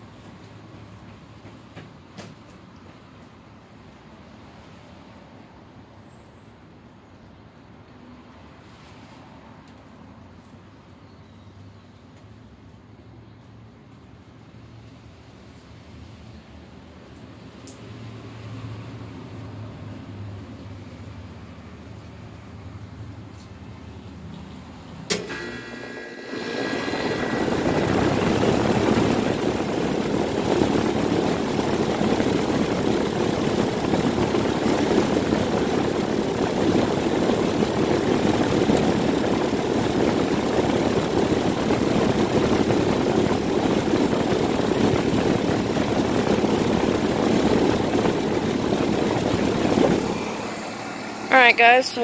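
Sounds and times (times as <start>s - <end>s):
air conditioner running: 22.0s - 52.0s.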